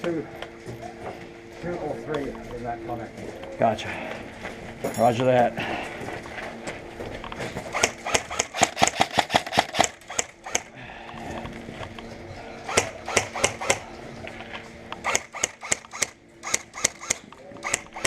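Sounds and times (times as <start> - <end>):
faint steady hum: 0.0 - 18.0
airsoft guns firing: 7.7 - 10.7, 12.7 - 13.8, 15.0 - 18.0.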